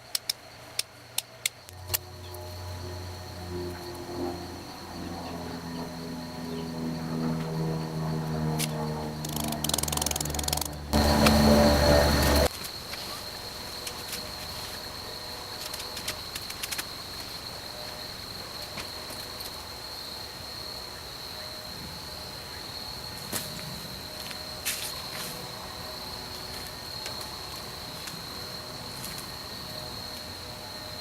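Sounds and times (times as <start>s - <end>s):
crickets trilling: 0.0s - 31.0s
scattered clicks and knocks: 8.6s - 11.4s.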